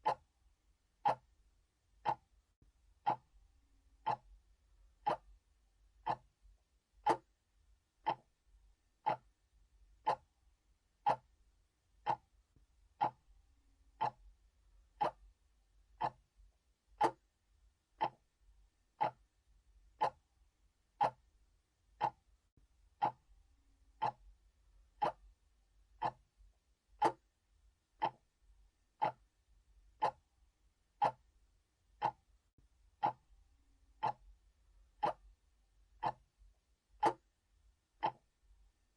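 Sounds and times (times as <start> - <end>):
clock ticking: 0.0 - 0.3, 1.0 - 1.4, 2.0 - 2.3, 2.9 - 3.4, 4.0 - 5.4, 6.0 - 6.4, 7.0 - 7.4, 8.0 - 8.4, 9.0 - 9.4, 10.0 - 10.4, 11.0 - 11.4, 12.0 - 12.3, 12.9 - 17.4, 18.0 - 18.3, 18.9 - 20.3, 20.9 - 21.3, 22.0 - 22.3, 22.9 - 27.4, 28.0 - 28.3, 28.9 - 37.4, 38.0 - 38.4.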